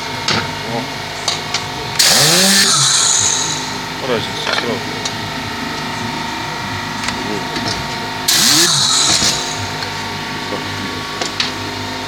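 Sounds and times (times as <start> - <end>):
motor humming: 0.0 - 12.0
compressed air gun hissing: 2.0 - 3.9, 8.3 - 9.9.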